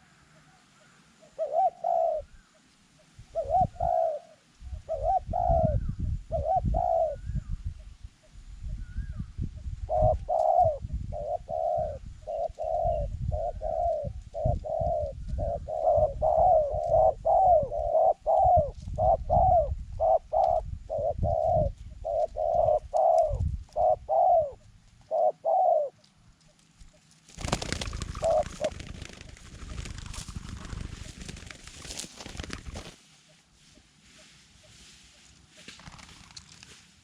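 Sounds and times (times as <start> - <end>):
dove cooing: 0.0 - 7.5, 9.8 - 26.1, 26.8 - 31.5.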